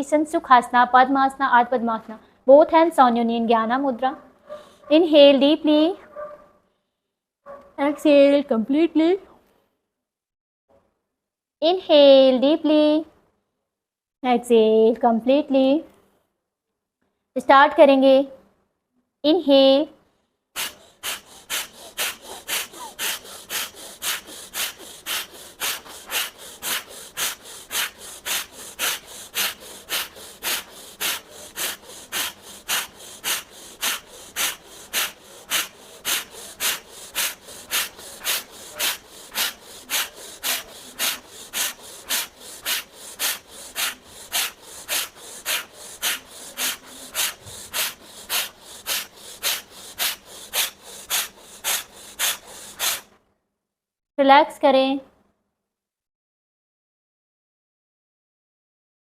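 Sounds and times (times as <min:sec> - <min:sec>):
person breathing forcefully: 0:20.6 - 0:53.2.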